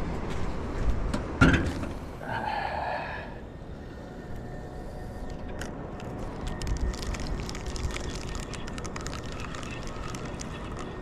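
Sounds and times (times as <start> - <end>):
low rumbling noise: 0.0 - 11.0
sharp clicks and crackles: 5.3 - 11.0.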